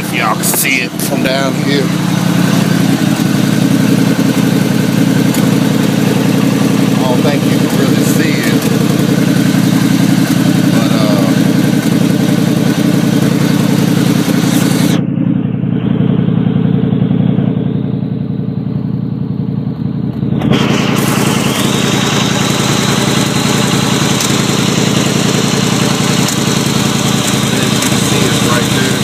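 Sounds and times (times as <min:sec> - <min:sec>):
car engine running loudly: 0:00.0 - 0:29.0.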